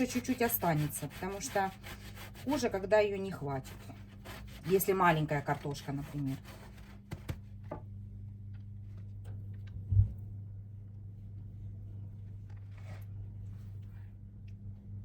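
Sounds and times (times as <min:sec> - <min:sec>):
potato scraping on a grater: 0:00.0 - 0:07.0
steady low hum: 0:00.0 - 0:15.0.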